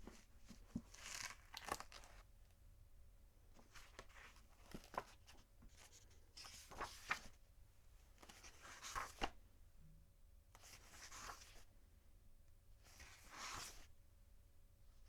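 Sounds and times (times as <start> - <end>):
book pages turning: 0.0 - 2.2, 6.4 - 7.3, 8.2 - 9.3.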